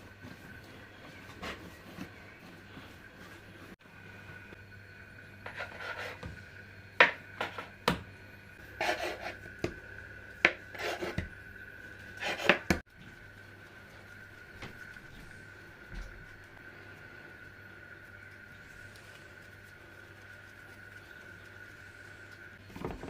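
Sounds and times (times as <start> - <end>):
faint steady hum: 0.0 - 23.0
scraping on wooden board: 5.4 - 6.3, 10.4 - 11.3, 12.2 - 12.8.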